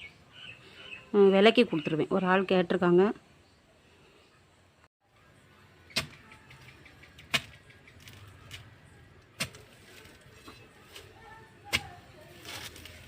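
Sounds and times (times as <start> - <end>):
hoe striking soil: 5.9 - 6.2, 9.4 - 13.0.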